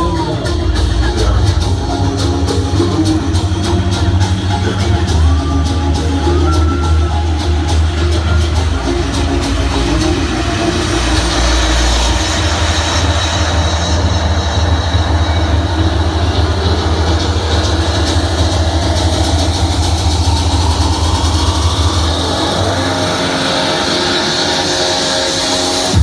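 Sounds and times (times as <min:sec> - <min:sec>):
boat engine rumbling: 0:00.0 - 0:26.0.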